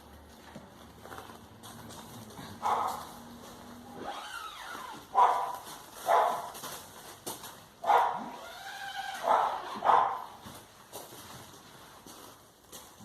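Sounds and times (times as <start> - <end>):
dog barking: 2.6 - 3.1, 5.1 - 6.6, 7.8 - 8.4, 9.2 - 10.4.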